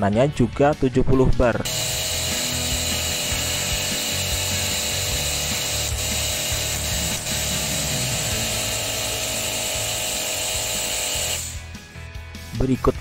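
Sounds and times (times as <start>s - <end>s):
motor and pump hum: 1.6s - 11.7s
water jet hissing: 1.7s - 11.6s.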